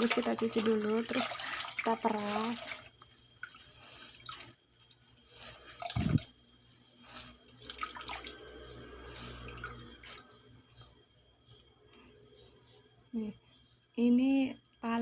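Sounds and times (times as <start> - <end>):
water splashing and dripping: 0.0 - 10.9.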